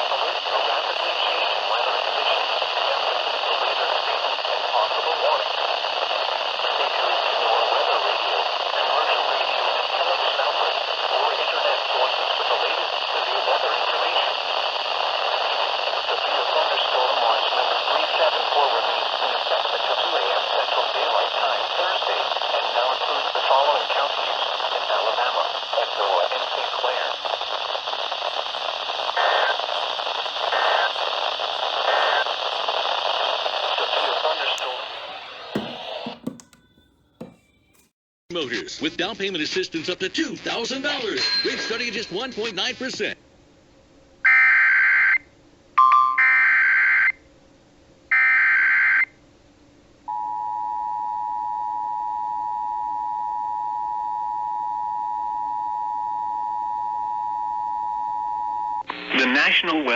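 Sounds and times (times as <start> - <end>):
radio static hiss: 0.0 - 36.3, 58.9 - 59.9.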